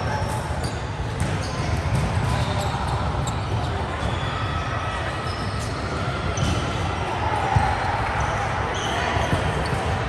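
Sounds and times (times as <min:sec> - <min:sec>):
shoe squeaks on court floor: 0:00.1 - 0:04.4, 0:05.2 - 0:06.8.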